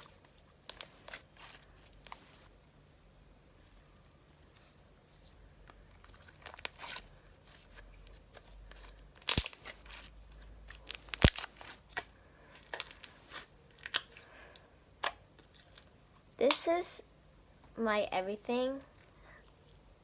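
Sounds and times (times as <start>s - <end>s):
slime sticky pops and crackles: 0.6s - 2.2s, 9.1s - 10.1s, 10.7s - 14.2s, 15.0s - 16.7s.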